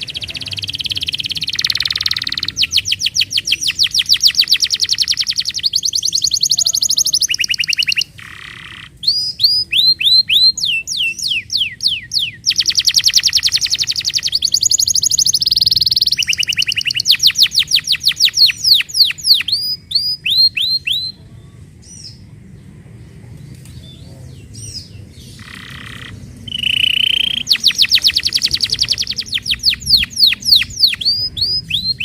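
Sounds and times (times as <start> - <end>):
canary singing trills: 0.0 - 22.4, 23.8 - 32.0.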